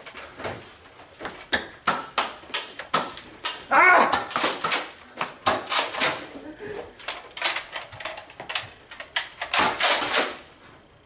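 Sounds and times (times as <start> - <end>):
loud wavering vocal cry: 3.7 - 4.3.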